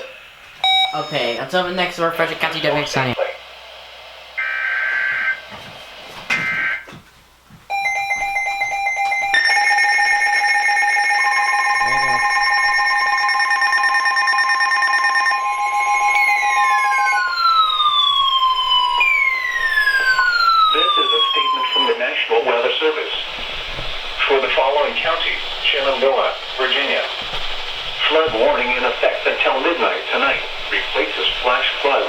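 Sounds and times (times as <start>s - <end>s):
steady electronic alert tones: 0.6s - 3.1s, 7.7s - 22.0s
downward-sweeping tones: 9.3s - 22.0s.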